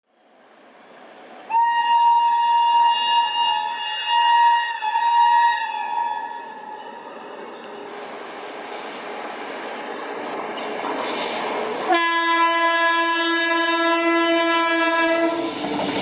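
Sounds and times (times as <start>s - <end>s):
approaching train noise: 0.1s - 16.0s
locomotive horn long note: 1.5s - 7.1s, 11.9s - 15.5s.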